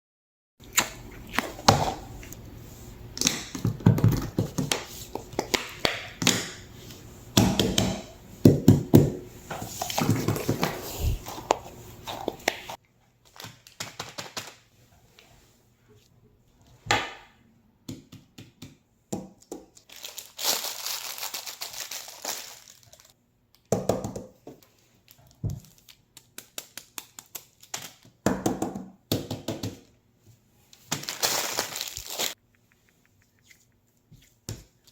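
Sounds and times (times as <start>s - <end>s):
plastic packaging crinkling: 19.8s - 23.2s, 24.9s - 28.0s, 30.8s - 32.4s.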